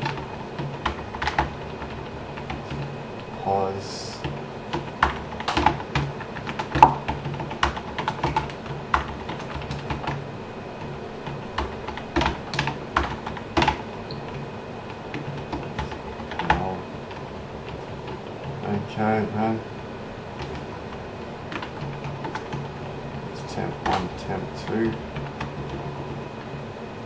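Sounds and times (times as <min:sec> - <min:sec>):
typing on a computer keyboard: 0:00.0 - 0:02.9, 0:04.1 - 0:10.2, 0:10.8 - 0:18.6, 0:20.4 - 0:22.7, 0:23.8 - 0:25.9.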